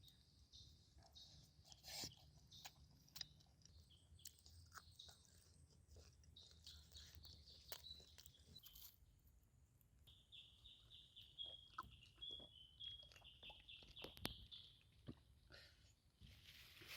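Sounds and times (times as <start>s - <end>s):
faint bird chirps: 0.0s - 9.1s, 10.0s - 16.6s
faint clicks and taps: 13.0s - 15.3s.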